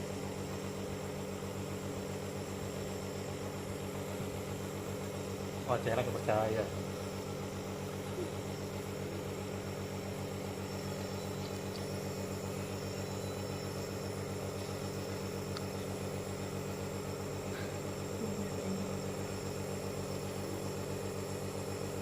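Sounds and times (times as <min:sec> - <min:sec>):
nebulizer motor humming: 0:00.0 - 0:22.0.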